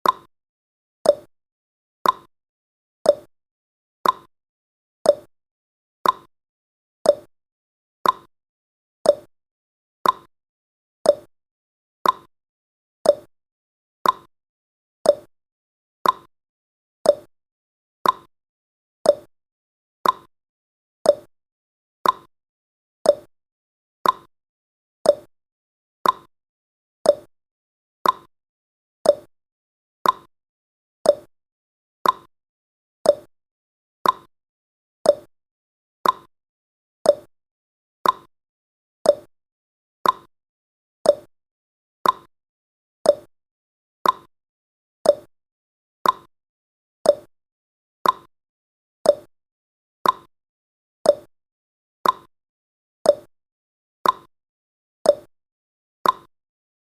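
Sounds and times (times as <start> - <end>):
timer ticking: 0.0 - 0.3, 1.1 - 1.3, 2.0 - 2.3, 3.1 - 3.3, 4.0 - 4.3, 5.1 - 5.3, 6.0 - 6.3, 7.1 - 7.3, 8.0 - 8.3, 9.1 - 9.3, 10.0 - 10.3, 11.1 - 11.3, 12.0 - 12.3, 13.1 - 13.3, 14.0 - 14.3, 15.1 - 15.3, 16.0 - 16.3, 17.1 - 17.3, 18.0 - 18.3, 19.1 - 19.3, 20.0 - 20.3, 21.1 - 21.3, 22.0 - 22.3, 23.1 - 23.3, 24.0 - 24.3, 25.1 - 25.3, 26.0 - 26.3, 27.1 - 27.3, 28.0 - 28.3, 29.0 - 29.3, 30.0 - 30.3, 31.1 - 31.3, 32.0 - 32.3, 33.1 - 33.3, 34.0 - 34.3, 35.1 - 35.3, 36.0 - 36.3, 37.1 - 37.3, 38.0 - 38.3, 39.1 - 39.3, 40.0 - 40.3, 41.1 - 41.3, 42.0 - 42.3, 43.1 - 43.3, 44.0 - 44.3, 45.1 - 45.3, 46.0 - 46.3, 47.1 - 47.3, 48.0 - 48.3, 49.1 - 49.3, 50.0 - 50.3, 51.1 - 51.3, 52.0 - 52.3, 53.1 - 53.3, 54.0 - 54.3, 55.1 - 55.3, 56.0 - 56.3.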